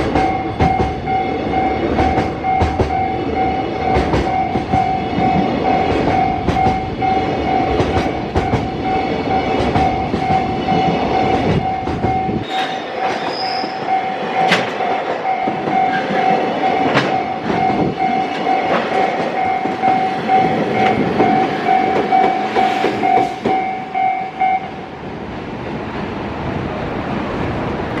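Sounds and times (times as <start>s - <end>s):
train wheels clicking over rail joints: 0.0s - 23.9s
level crossing alarm ringing: 0.0s - 24.8s.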